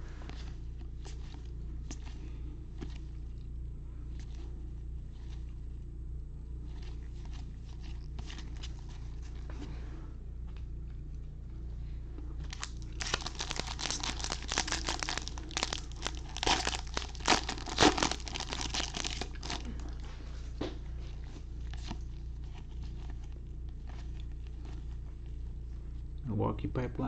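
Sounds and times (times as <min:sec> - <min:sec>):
foil wrapper tearing and crinkling: 0:12.4 - 0:19.9.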